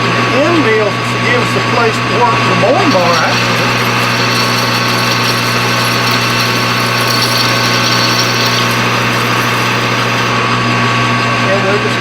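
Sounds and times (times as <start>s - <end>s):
metal lathe humming and whining: 1.4s - 12.0s.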